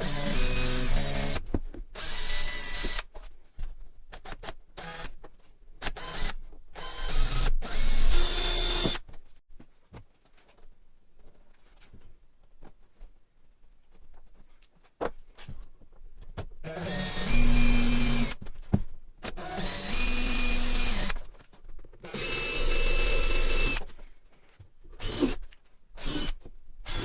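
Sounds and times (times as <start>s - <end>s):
electric drill boring: 0.0s - 1.4s, 2.0s - 3.0s, 6.0s - 9.0s, 16.7s - 18.4s, 19.4s - 21.2s, 22.1s - 23.8s, 25.0s - 25.4s, 26.0s - 27.0s.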